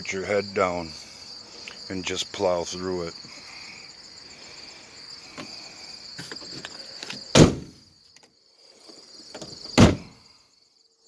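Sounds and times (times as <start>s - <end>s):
crickets chirping: 0.0s - 11.0s
loud heavy thumps: 7.4s - 7.8s, 9.8s - 10.2s.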